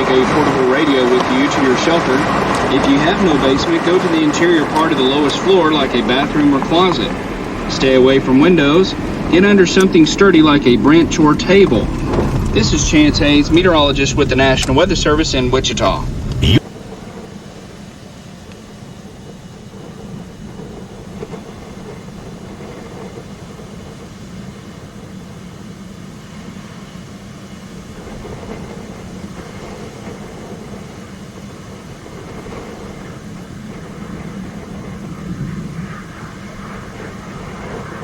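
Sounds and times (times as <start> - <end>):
vehicle engine hum: 0.0 - 16.6
road noise: 0.0 - 16.9, 27.7 - 38.0.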